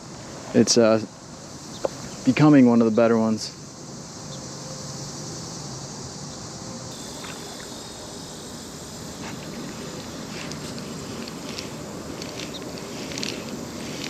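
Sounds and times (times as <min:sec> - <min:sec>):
high-pitched insect chorus: 0:00.0 - 0:14.0
faint ticks: 0:09.2 - 0:14.0.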